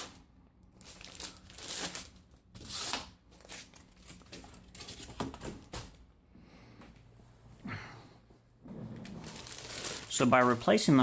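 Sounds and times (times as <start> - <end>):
crinkling and rustling: 0.0 - 6.0, 8.7 - 11.0.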